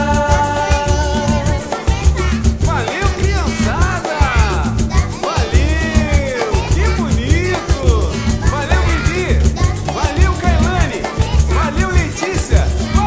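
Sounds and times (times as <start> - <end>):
dance music: 0.0 - 13.0.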